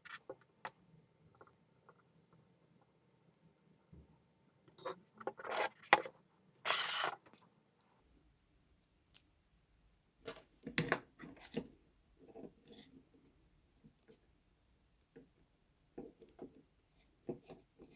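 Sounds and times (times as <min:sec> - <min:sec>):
short hissing scrape: 0:06.7 - 0:07.2.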